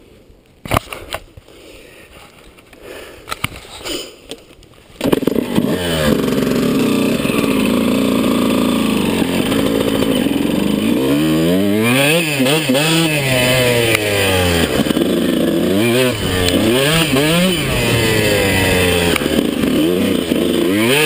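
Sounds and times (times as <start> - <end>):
dirt bike engine revving: 5.0 - 21.0.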